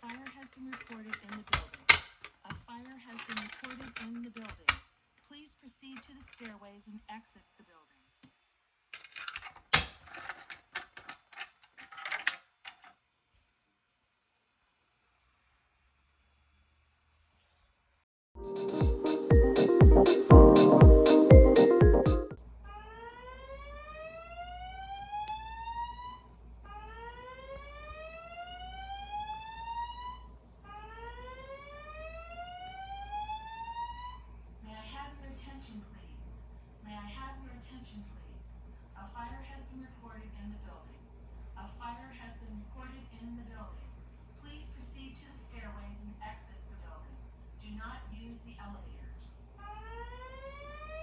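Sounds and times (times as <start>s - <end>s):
rapid clatter of clicks: 0.0s - 4.8s
slow whoop alarm tone: 22.7s - 34.3s.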